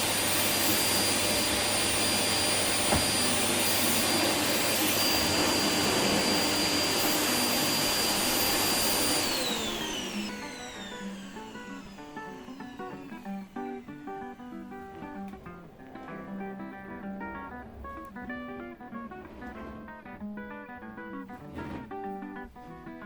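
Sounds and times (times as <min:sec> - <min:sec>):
vacuum motor winding down: 0:00.0 - 0:15.3
vacuum cleaner running: 0:00.0 - 0:19.9.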